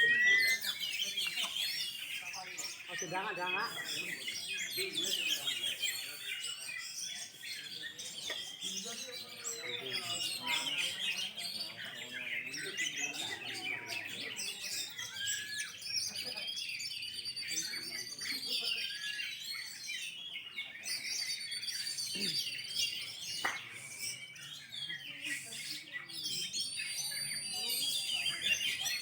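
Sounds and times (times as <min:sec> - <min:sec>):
high bird trills: 0:00.0 - 0:01.0
magpie-robins singing: 0:00.0 - 0:29.0.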